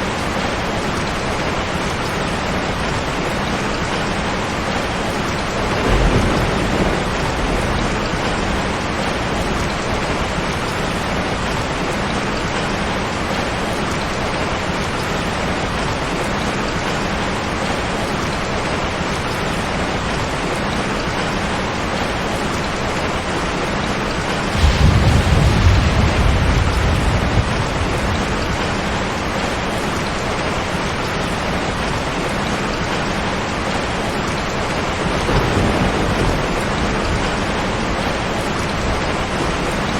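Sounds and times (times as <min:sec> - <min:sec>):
heavy rain on a tin roof: 0:00.0 - 0:39.9
thunder rumbling: 0:04.8 - 0:11.9, 0:24.5 - 0:32.0, 0:34.4 - 0:39.9.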